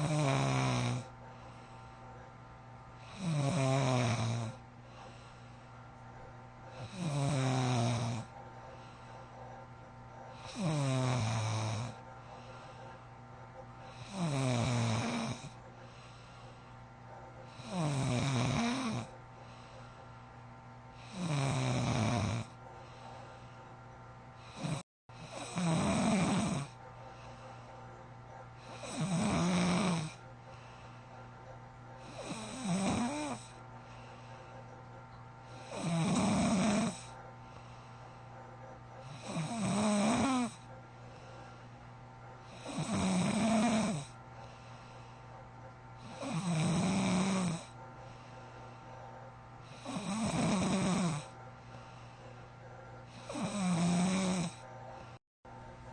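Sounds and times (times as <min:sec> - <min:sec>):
heavy snoring: 0:00.0 - 0:01.2, 0:03.0 - 0:05.4, 0:06.7 - 0:09.2, 0:10.3 - 0:13.0, 0:13.9 - 0:16.6, 0:17.5 - 0:19.7, 0:20.9 - 0:23.4, 0:24.4 - 0:27.5, 0:28.6 - 0:30.2, 0:32.0 - 0:34.4, 0:35.4 - 0:37.9, 0:39.0 - 0:41.6, 0:42.4 - 0:45.2, 0:46.0 - 0:48.9, 0:49.6 - 0:52.4, 0:53.0 - 0:55.2
steady low hum: 0:00.0 - 0:55.9.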